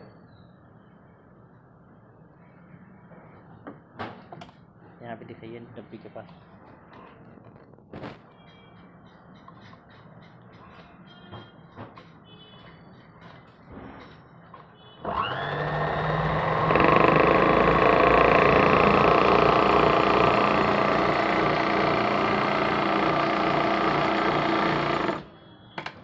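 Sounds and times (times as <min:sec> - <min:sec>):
sewing machine whining: 0:15.0 - 0:25.4.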